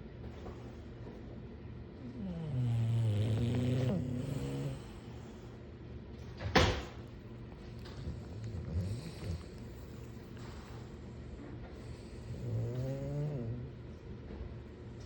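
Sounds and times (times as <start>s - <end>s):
dog snoring: 2.0s - 5.5s, 7.7s - 11.0s, 11.7s - 14.0s.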